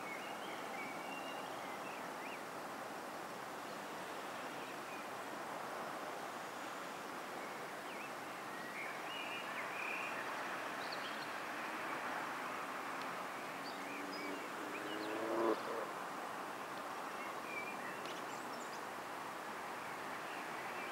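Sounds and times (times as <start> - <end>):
outdoor background noise: 0.0 - 20.9
small birds chirping: 16.5 - 19.0.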